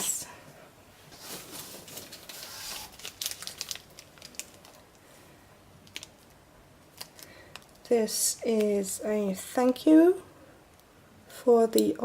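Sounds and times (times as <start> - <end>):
plastic packaging crinkling: 1.1 - 5.1, 5.8 - 7.9.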